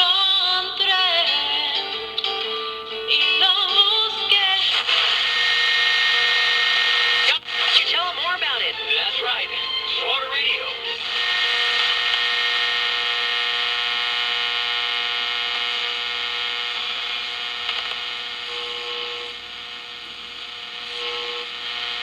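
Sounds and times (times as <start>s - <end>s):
radio static hiss: 3.9s - 22.0s
buzz of steady tones: 4.7s - 8.7s, 10.6s - 22.0s.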